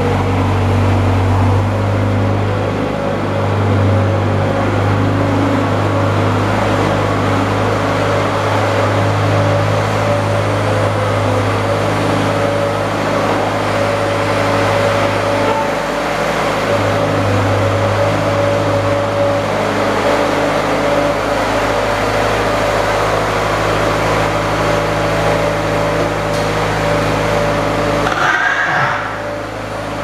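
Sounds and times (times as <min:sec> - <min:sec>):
garden tractor engine running: 0:00.0 - 0:30.0.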